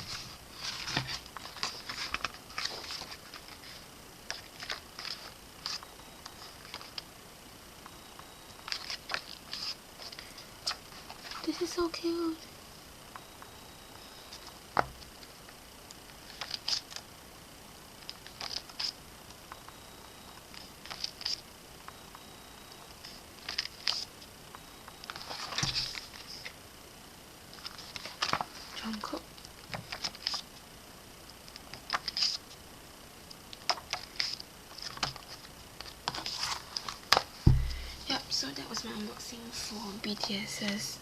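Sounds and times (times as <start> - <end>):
pages turning and rustling: 0.0 - 7.0, 8.6 - 11.4, 16.2 - 17.0, 18.0 - 19.0, 20.6 - 21.4, 23.0 - 24.1, 25.0 - 26.6, 27.5 - 28.7, 29.8 - 30.4, 31.9 - 32.4, 33.7 - 37.8.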